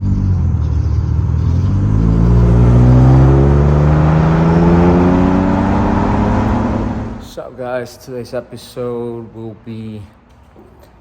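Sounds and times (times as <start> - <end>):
vehicle engine accelerating: 0.0 - 7.3.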